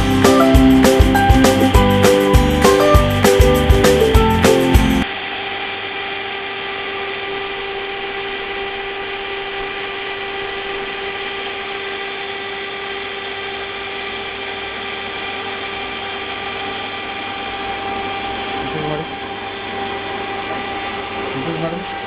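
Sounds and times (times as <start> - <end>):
motor drive whining over hum: 0.0 - 22.0.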